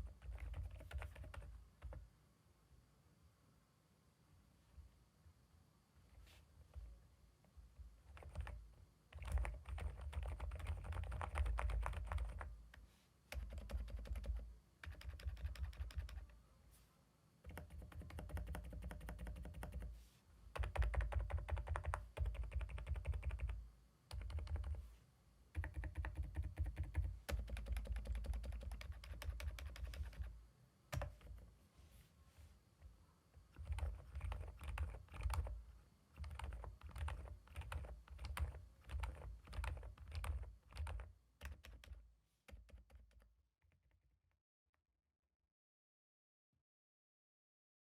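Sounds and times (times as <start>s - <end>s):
typing on mechanical keyboard: 0.0s - 2.0s, 8.1s - 12.5s, 13.3s - 16.3s, 17.5s - 19.9s, 20.6s - 24.8s, 25.5s - 30.3s, 30.9s - 31.4s, 33.5s - 43.3s.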